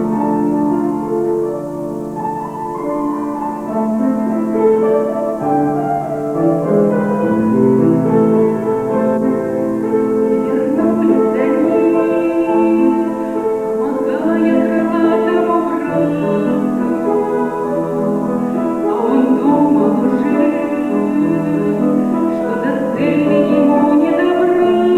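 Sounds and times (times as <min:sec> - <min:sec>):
piano accompaniment: 0:00.0 - 0:24.9
woman singing with vibrato: 0:07.3 - 0:24.9.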